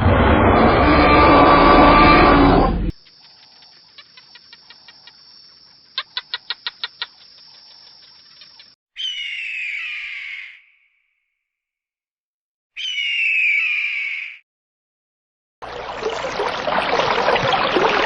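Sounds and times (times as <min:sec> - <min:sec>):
loud animal roar: 0:00.0 - 0:02.9
bird chirping: 0:03.0 - 0:11.0, 0:12.8 - 0:14.4.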